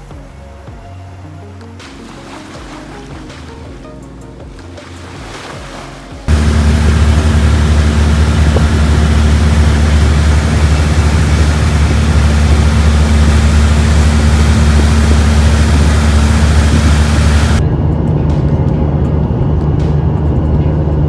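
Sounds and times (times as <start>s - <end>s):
rushing noise: 6.3s - 17.6s
loud engine drone: 6.3s - 18.3s.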